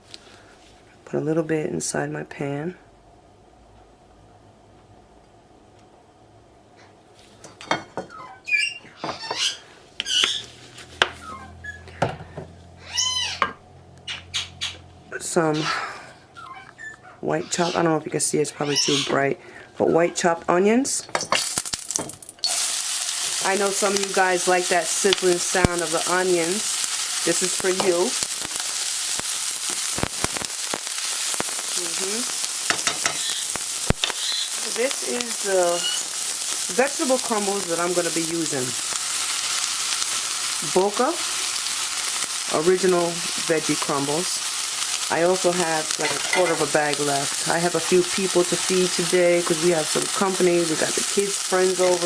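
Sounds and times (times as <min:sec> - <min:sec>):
shrill squawking calls: 0:08.1 - 0:10.5, 0:11.2 - 0:12.0, 0:12.8 - 0:14.8, 0:15.5 - 0:17.9, 0:18.6 - 0:19.3, 0:33.1 - 0:34.7
onions sizzling in oil: 0:21.3 - 0:52.0
pans and utensils clattering: 0:46.0 - 0:46.7.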